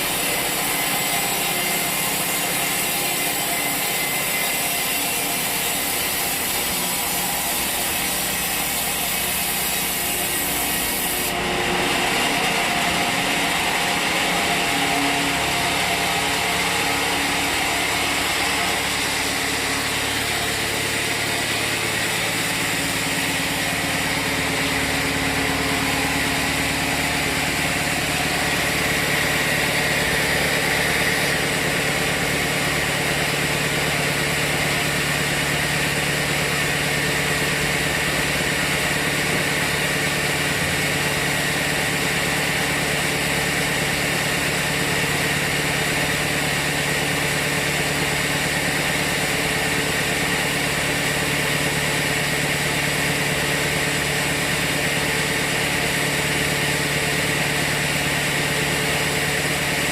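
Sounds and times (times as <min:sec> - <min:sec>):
sawmill machinery drone: 0:00.0 - 0:59.9.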